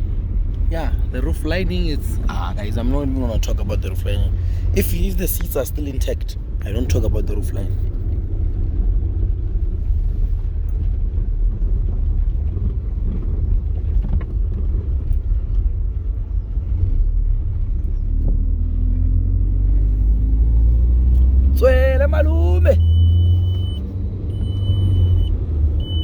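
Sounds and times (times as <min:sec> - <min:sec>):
car engine and road rumble: 0:00.0 - 0:26.0.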